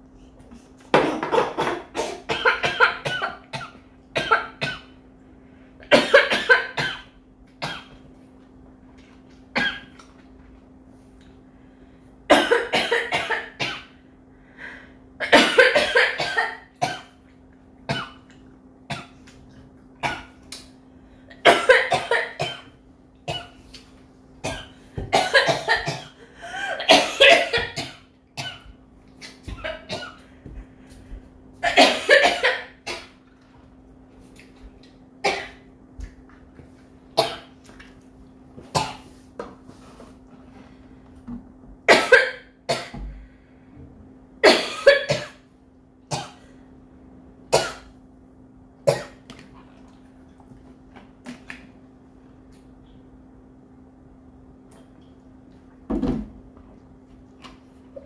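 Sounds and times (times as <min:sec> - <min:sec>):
faint steady hum: 0:00.0 - 0:58.0
woman coughing: 0:00.9 - 0:04.9, 0:05.9 - 0:07.9, 0:12.3 - 0:13.9, 0:15.2 - 0:17.1, 0:21.4 - 0:22.7, 0:24.4 - 0:28.7, 0:31.6 - 0:33.1, 0:41.9 - 0:43.0, 0:44.4 - 0:45.4.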